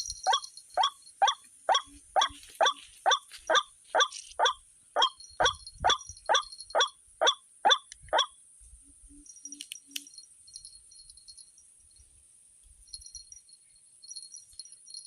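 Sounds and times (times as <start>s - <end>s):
bird calling harsh repeated notes: 0.0s - 8.3s.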